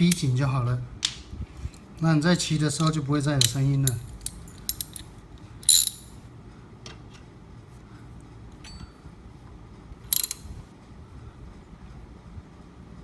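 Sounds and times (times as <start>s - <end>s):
wrench ratcheting clicks: 2.8s - 5.0s, 10.1s - 10.5s.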